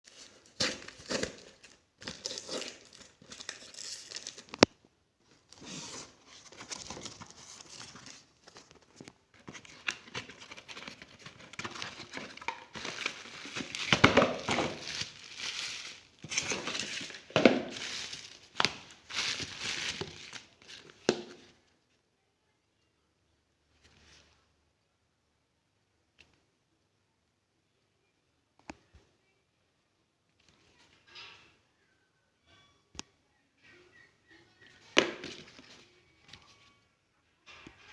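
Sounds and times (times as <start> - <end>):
packaging crinkling and tearing: 0.1 - 4.7, 5.6 - 21.1.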